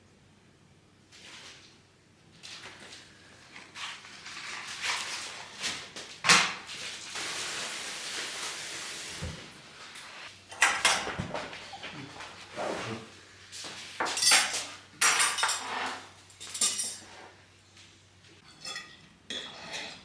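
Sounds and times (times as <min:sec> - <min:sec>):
steady hiss: 0:07.1 - 0:10.4
dishes and utensils clattering: 0:10.5 - 0:13.0, 0:14.0 - 0:17.4, 0:18.4 - 0:20.0.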